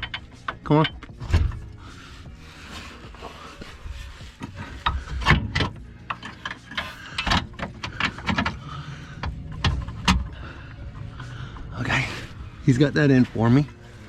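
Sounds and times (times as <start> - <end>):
metal clicks and knocks of tools: 0.0 - 1.2, 4.5 - 8.6.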